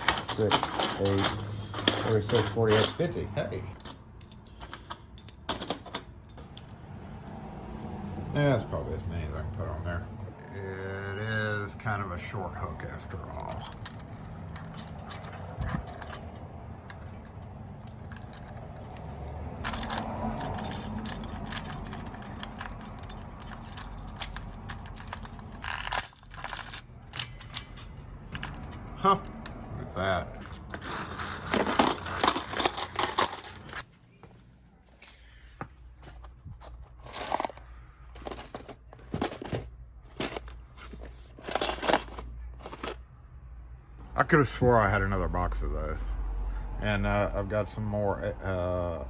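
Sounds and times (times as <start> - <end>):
metal clinking: 0.0 - 3.1, 3.7 - 6.8, 13.5 - 19.0, 19.6 - 28.9, 30.4 - 33.8, 36.7 - 43.0
metal keys jingling: 0.0 - 6.7, 13.4 - 29.4, 30.4 - 33.9.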